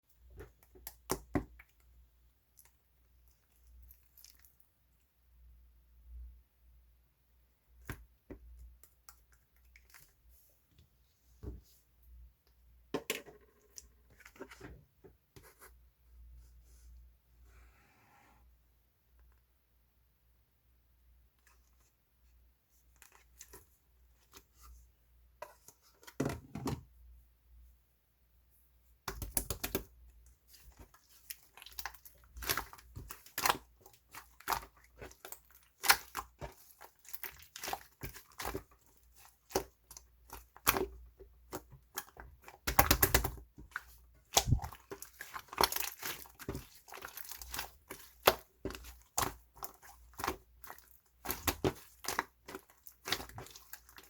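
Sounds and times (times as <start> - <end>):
slime squishing with sticky clicks: 0.2 - 5.1, 29.0 - 54.0.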